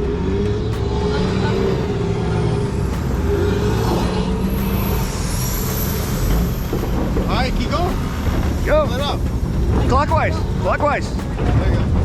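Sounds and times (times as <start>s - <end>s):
wavering mid-pitched whine: 0.0s - 11.3s
heavy engine low rumble: 0.0s - 12.0s
faint high whine: 0.8s - 10.4s.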